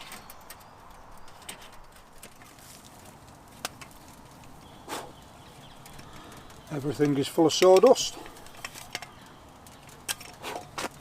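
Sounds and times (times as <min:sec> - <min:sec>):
cooking gear clicking and knocking: 0:05.6 - 0:11.0.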